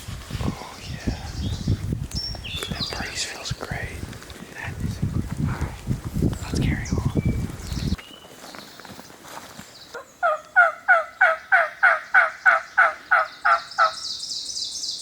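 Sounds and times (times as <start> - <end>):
turkey yelps: 10.0 - 14.0.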